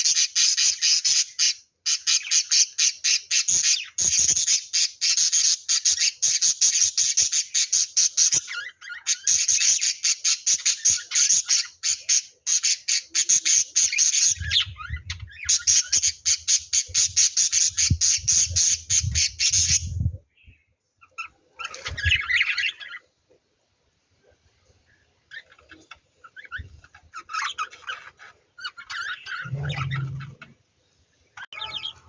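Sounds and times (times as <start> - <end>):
lovebirds squawking chatter: 21.0 - 23.0, 25.3 - 30.5, 31.5 - 32.0
low rumble: 29.4 - 30.5.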